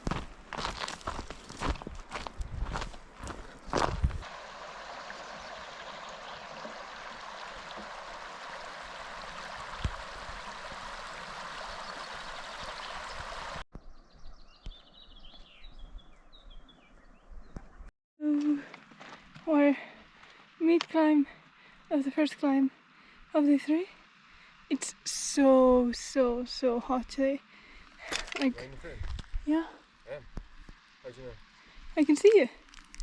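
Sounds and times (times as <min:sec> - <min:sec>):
mountain stream rushing: 0:04.2 - 0:13.6.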